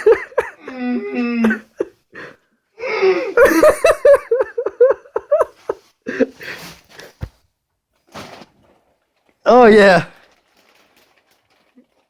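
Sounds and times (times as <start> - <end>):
person laughing: 3.3 - 6.4.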